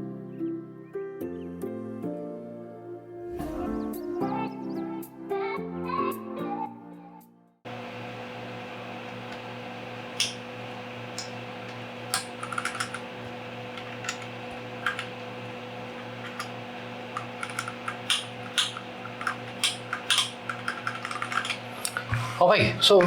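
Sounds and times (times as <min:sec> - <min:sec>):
steady low hum: 0:07.7 - 0:23.0
mechanical keyboard keys clacking: 0:11.2 - 0:13.1, 0:13.7 - 0:15.2, 0:16.2 - 0:22.1.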